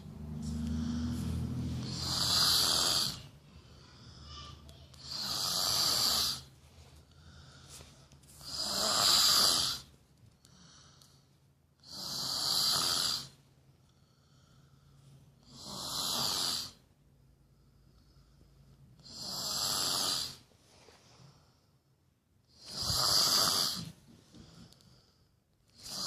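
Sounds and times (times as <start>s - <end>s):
quiet breathing: 0.0s - 26.0s
woman snoring: 0.6s - 3.3s, 5.0s - 6.5s, 8.4s - 9.9s, 11.8s - 13.4s, 15.4s - 16.8s, 19.0s - 20.5s, 22.6s - 24.0s, 25.8s - 26.0s.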